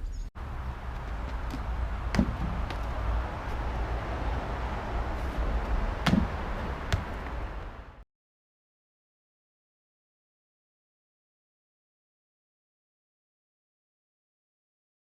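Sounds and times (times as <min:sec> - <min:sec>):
sharp thud: 0:01.4 - 0:03.0, 0:06.0 - 0:07.4.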